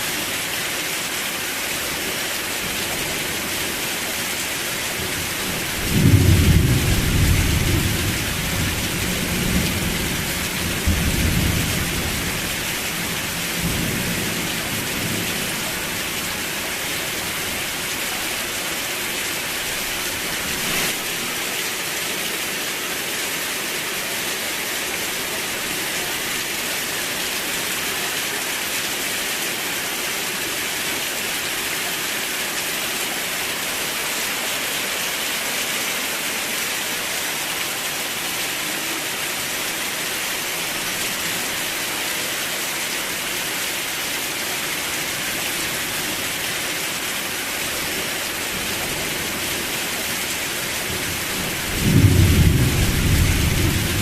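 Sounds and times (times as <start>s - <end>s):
heavy rain falling: 0.0s - 54.0s
thunder rumbling: 51.1s - 54.0s.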